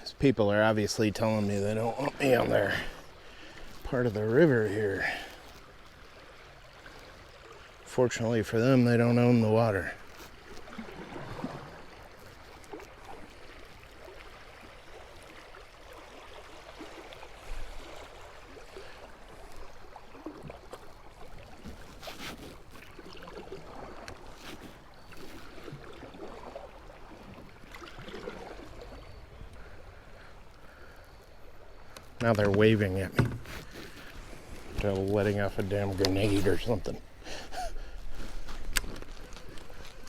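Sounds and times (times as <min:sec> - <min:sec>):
water moving around kayak: 0:00.0 - 0:40.0
boat knocks and clicks: 0:32.2 - 0:33.7.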